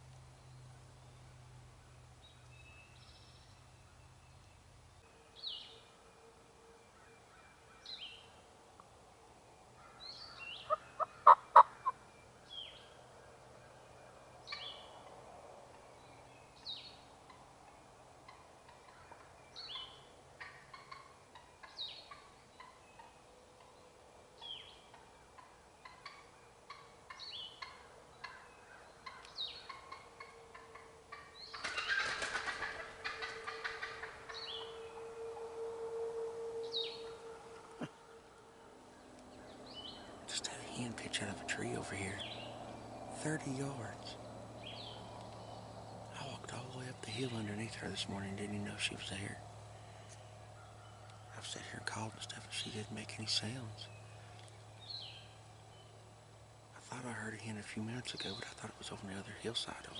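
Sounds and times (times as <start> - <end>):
turkey hen yelping: 10.5 - 12.0, 29.0 - 35.0
bird wingbeats: 31.5 - 33.7.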